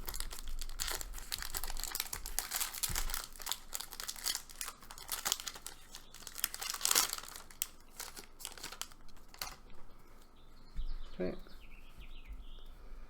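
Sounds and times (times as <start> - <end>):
card pack wrapper crinkling: 0.0 - 9.7.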